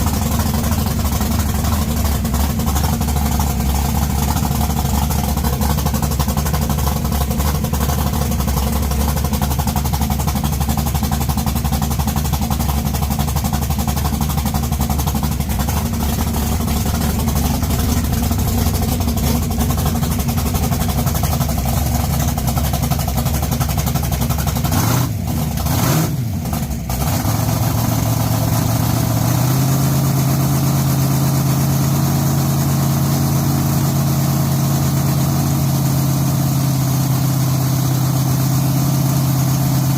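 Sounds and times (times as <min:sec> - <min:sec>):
car engine idling and revving: 0:00.0 - 0:39.9.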